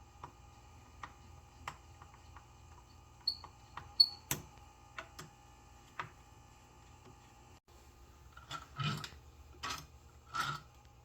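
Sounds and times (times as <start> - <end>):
tools and parts clicking and knocking: 8.3 - 10.8.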